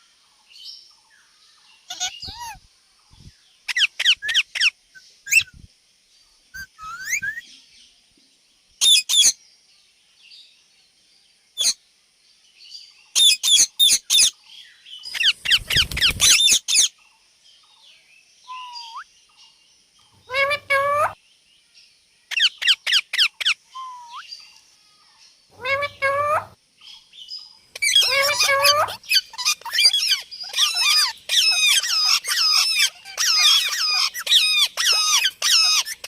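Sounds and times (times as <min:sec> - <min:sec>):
parakeet chirps and screeches: 0:01.9 - 0:02.6, 0:03.7 - 0:04.7, 0:06.6 - 0:07.4, 0:15.1 - 0:16.9, 0:18.5 - 0:19.0, 0:20.2 - 0:21.2, 0:22.3 - 0:24.2, 0:25.5 - 0:26.6, 0:27.8 - 0:36.0.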